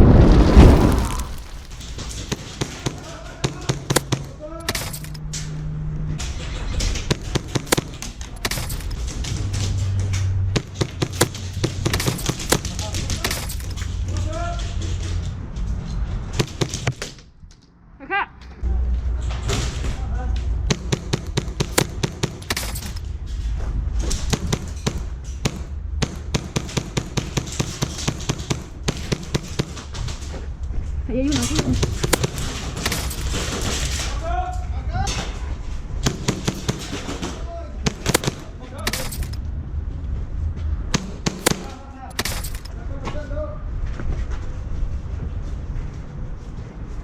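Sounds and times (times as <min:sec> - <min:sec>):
low rumble: 0:00.0 - 0:02.6, 0:17.2 - 0:47.0
steady low hum: 0:00.0 - 0:47.0
airsoft guns firing: 0:00.8 - 0:04.4, 0:07.0 - 0:09.2, 0:20.7 - 0:23.0, 0:24.2 - 0:30.0, 0:31.4 - 0:34.1, 0:36.0 - 0:39.4, 0:41.0 - 0:42.7.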